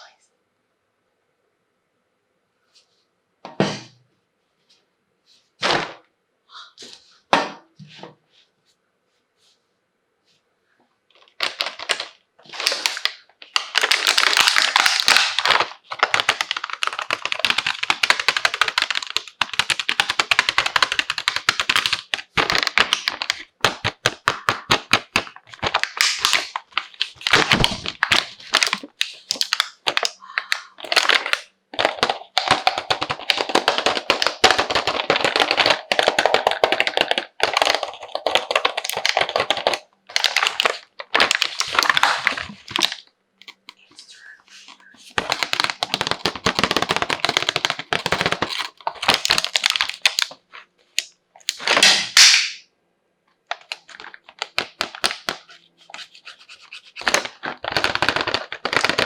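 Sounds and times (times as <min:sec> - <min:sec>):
packaging crackling and rustling: 0:11.1 - 0:51.9, 0:53.5 - 0:59.0
plastic toy parts tapping: 0:44.7 - 0:50.3.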